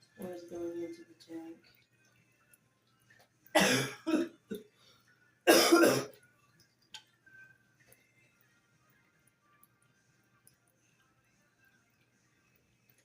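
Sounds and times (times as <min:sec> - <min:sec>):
person coughing: 0:03.6 - 0:04.6, 0:05.5 - 0:06.1.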